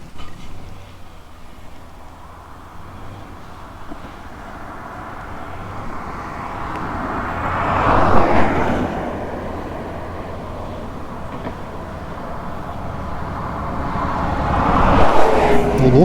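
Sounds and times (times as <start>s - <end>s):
motorcycle accelerating hard: 0.0s - 16.0s
wind noise: 3.4s - 16.0s.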